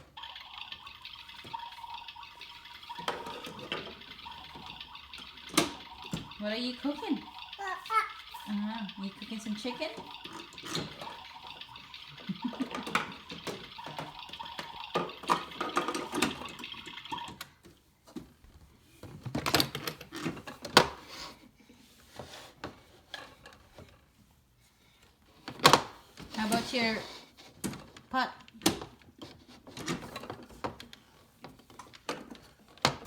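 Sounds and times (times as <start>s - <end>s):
toy kitchen hissing water effect: 0.0s - 17.6s, 20.8s - 21.4s, 25.7s - 27.5s
plastic toy pieces clicking: 0.2s - 17.4s.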